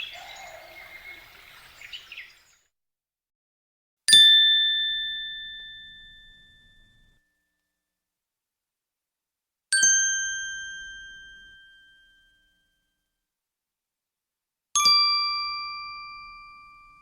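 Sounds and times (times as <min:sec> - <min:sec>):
birdsong: 0:00.0 - 0:02.7.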